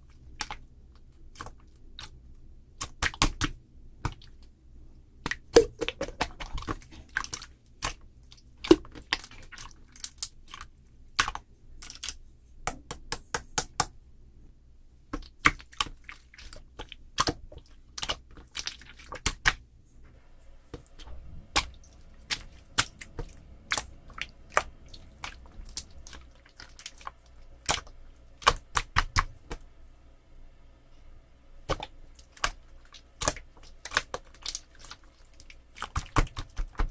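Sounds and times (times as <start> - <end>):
slime clicking and popping: 5.2 - 8.0.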